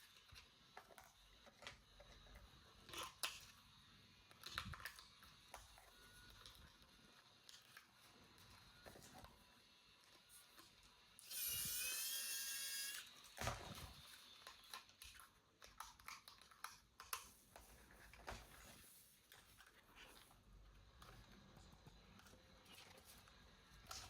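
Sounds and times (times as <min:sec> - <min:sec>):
toy motor whirring: 0:00.0 - 0:17.3.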